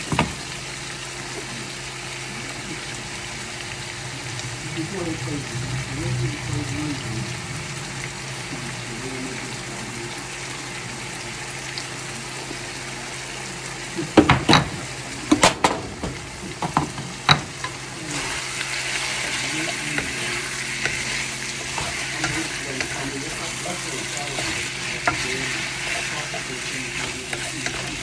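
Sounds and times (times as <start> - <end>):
food sizzling in a frying pan: 0.0 - 28.0
utensil scraping a pan: 17.6 - 28.0.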